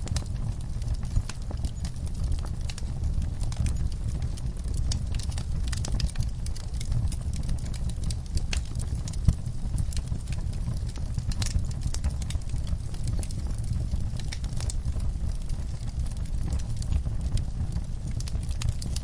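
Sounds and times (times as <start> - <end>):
fire crackling and popping: 0.0 - 19.0.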